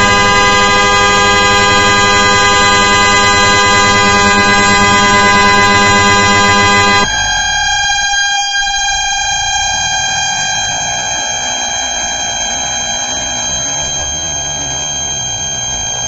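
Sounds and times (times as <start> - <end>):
car horn blaring: 0.0 - 7.6.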